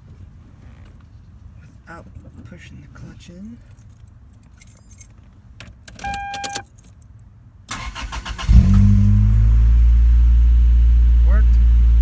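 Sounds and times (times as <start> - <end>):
keys rattling: 3.6 - 5.3, 5.9 - 7.2
short electronic beep: 6.0 - 6.6
car starter cranking: 7.7 - 9.5
car engine idling: 7.7 - 12.0.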